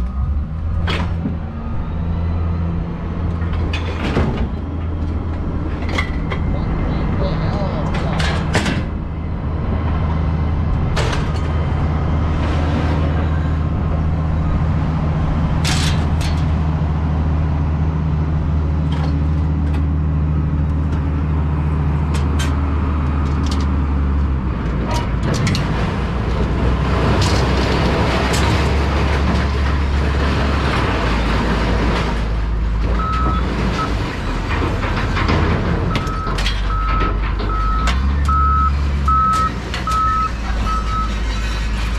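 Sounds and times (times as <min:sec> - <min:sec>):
reversing beeper: 0:00.0 - 0:00.8, 0:35.9 - 0:41.2
knocks and rattles: 0:03.3 - 0:06.9, 0:07.8 - 0:09.1, 0:10.9 - 0:11.7, 0:24.8 - 0:38.4
truck engine running: 0:26.0 - 0:41.9.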